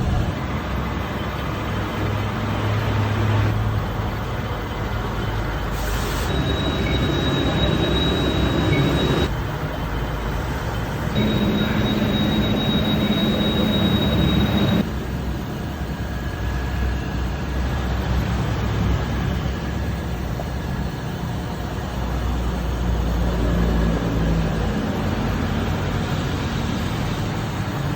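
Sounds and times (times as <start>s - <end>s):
high whine: 6.3s - 9.8s, 10.8s - 16.4s
lathe running drone: 6.3s - 27.9s
low hum: 11.1s - 15.0s.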